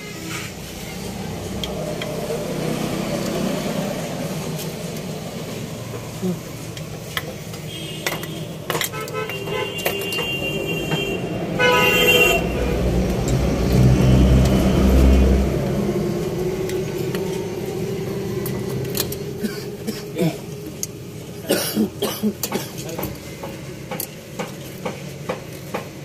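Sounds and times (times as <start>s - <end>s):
loud low engine rumble: 0.0s - 8.8s, 10.4s - 25.8s
vehicle horns tooting: 7.6s - 12.9s.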